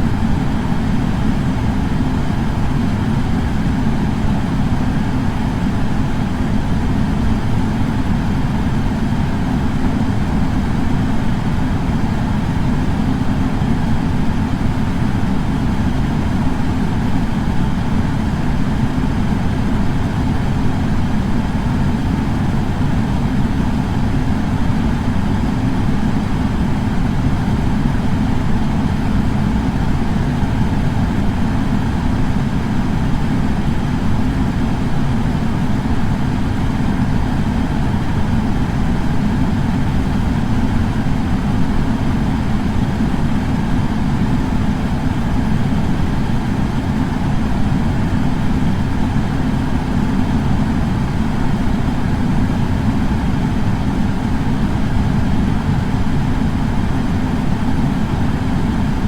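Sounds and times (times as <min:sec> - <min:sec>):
air purifier fan running: 0:00.0 - 0:59.0.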